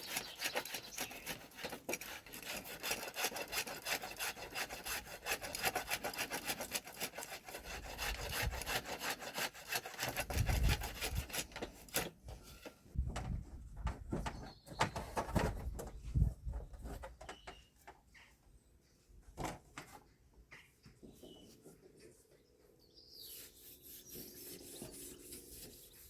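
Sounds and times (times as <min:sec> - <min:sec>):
hand tool rasping on wood: 0:00.0 - 0:12.1.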